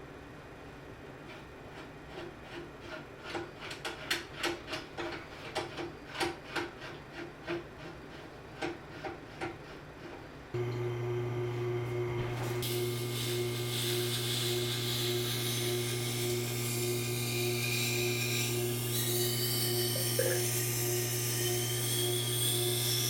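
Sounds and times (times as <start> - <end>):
tool rubbing against material: 1.3 - 10.2, 13.2 - 23.0
shop machine hum: 10.5 - 23.0
hissing grind: 12.4 - 23.0.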